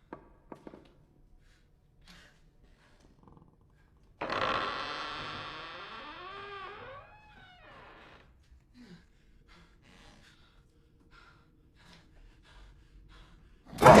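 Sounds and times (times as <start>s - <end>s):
faint breath-like sounds: 0.0s - 4.2s, 7.3s - 14.0s.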